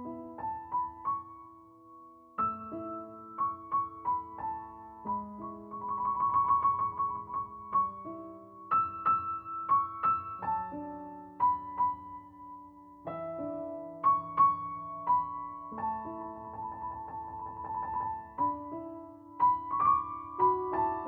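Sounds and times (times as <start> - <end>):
soft solo piano music: 0.0 - 21.0.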